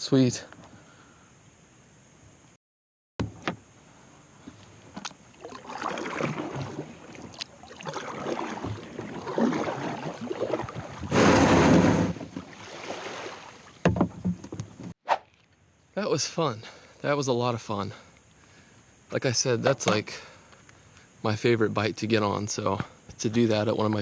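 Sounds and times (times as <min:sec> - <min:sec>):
water sloshing around kayak: 0:04.6 - 0:14.8.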